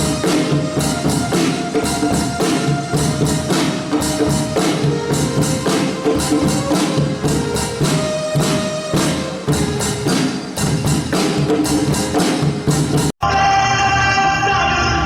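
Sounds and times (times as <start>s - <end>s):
instrumental music with percussion: 0.0s - 13.2s.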